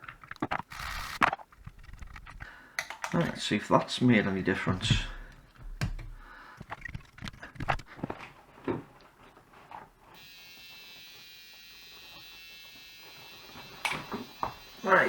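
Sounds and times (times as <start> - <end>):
handling clicks and knocks: 0.0 - 10.0
battery charger high-pitched whine: 0.5 - 1.4, 10.2 - 15.0.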